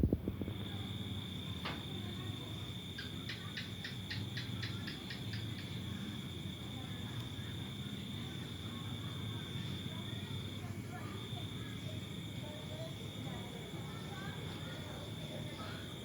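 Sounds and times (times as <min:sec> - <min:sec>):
crickets trilling: 0:00.0 - 0:16.0
pulsed insect chirp: 0:02.8 - 0:06.4.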